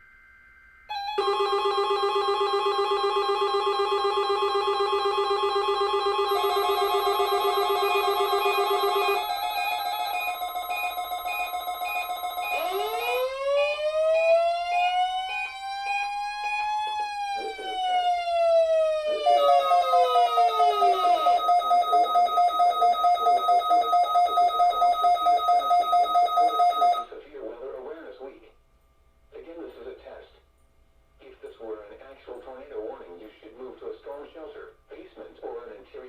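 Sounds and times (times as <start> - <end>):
warbling electronic alarm tones: 0.0 - 27.1
pulsing alarm tone: 0.9 - 27.1
siren tone rising and falling: 0.9 - 27.1.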